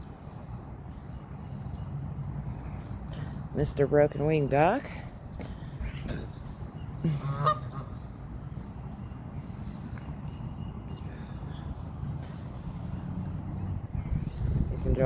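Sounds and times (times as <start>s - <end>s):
goose honking: 7.1s - 8.0s.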